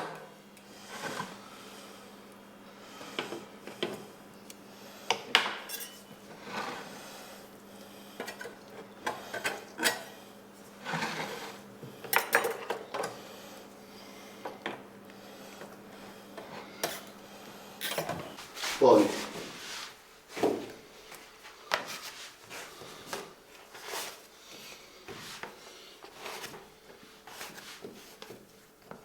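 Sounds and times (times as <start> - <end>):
metal trays clinking: 5.7 - 6.1.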